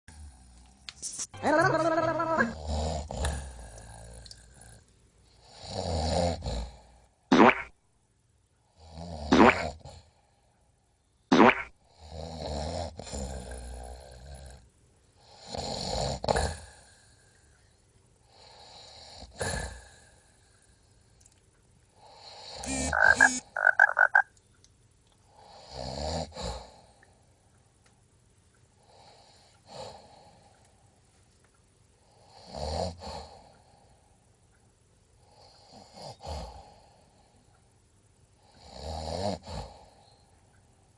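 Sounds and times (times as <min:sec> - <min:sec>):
person snoring: 0:01.5 - 0:04.8, 0:22.1 - 0:24.2
rattling snore: 0:02.4 - 0:06.8, 0:12.2 - 0:14.6.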